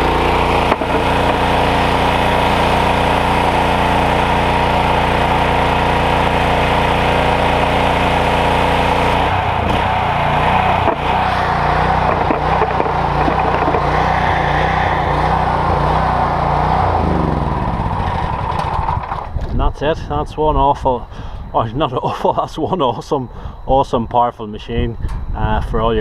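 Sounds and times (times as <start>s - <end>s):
pressure washer engine running: 0.0s - 19.3s.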